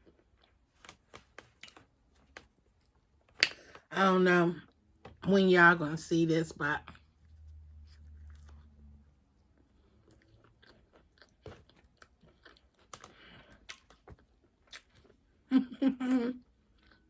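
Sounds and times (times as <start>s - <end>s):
chewing with wet mouth clicks: 0.0s - 2.9s, 6.9s - 8.8s, 9.4s - 15.2s.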